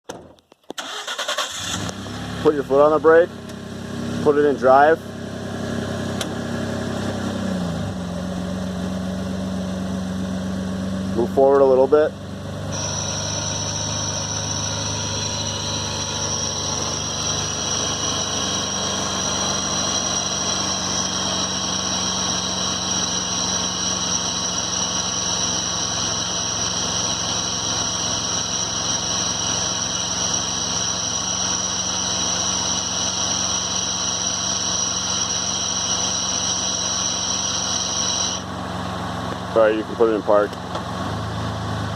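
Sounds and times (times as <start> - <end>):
truck engine hum: 0.8 - 41.9
high-pitched whine: 12.7 - 38.6.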